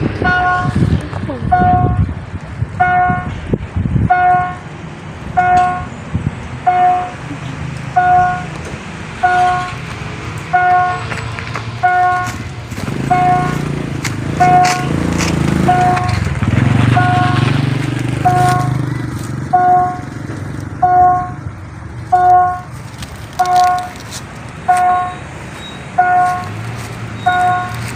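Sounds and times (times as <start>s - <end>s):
level crossing electronic tone: 16.8s - 17.6s.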